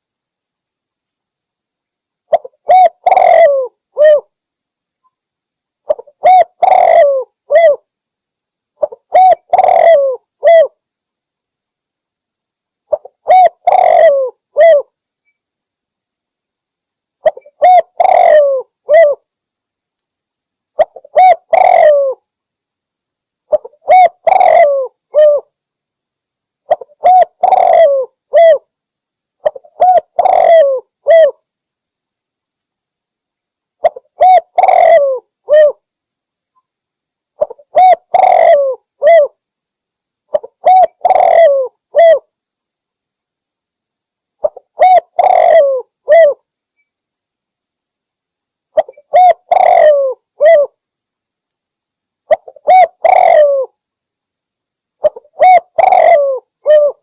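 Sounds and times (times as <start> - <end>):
dove cooing: 2.3 - 4.3, 5.9 - 7.8, 8.8 - 10.8, 12.9 - 14.9, 17.2 - 19.2, 20.8 - 22.2, 23.5 - 25.5, 26.7 - 28.6, 29.4 - 31.4, 33.8 - 35.8, 37.4 - 39.4, 40.3 - 42.3, 44.4 - 46.4, 48.8 - 50.8, 52.3 - 53.7, 55.0 - 57.0.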